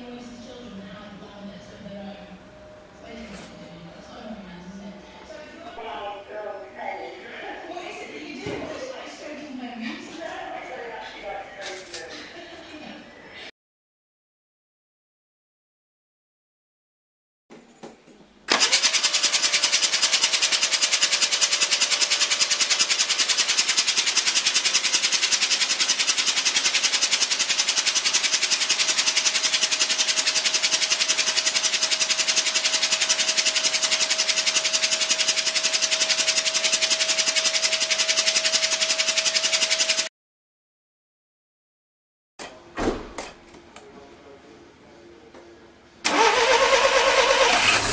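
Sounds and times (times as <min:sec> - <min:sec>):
rotary engine running: 0:18.5 - 0:40.1, 0:46.1 - 0:47.9.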